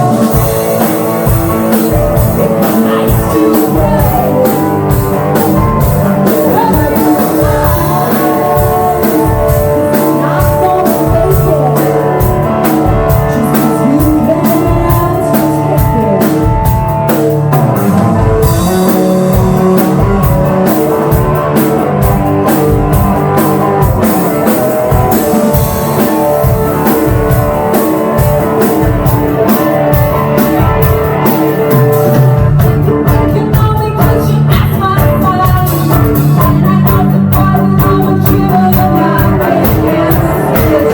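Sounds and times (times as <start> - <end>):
person singing: 0.0 - 17.5, 23.6 - 40.9
live rock band playing: 0.0 - 40.9.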